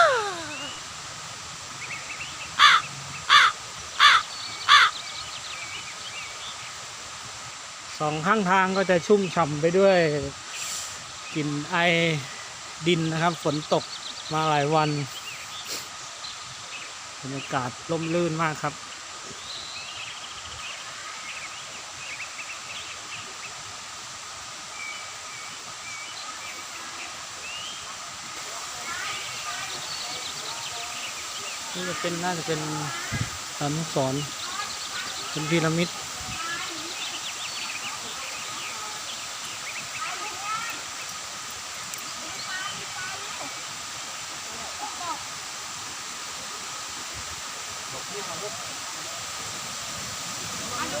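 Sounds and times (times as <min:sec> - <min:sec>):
bird calling: 0:00.0 - 0:00.9, 0:02.6 - 0:05.1
birds chirping: 0:00.0 - 0:01.0, 0:01.8 - 0:06.6, 0:28.8 - 0:51.0
background hiss: 0:00.0 - 0:51.0.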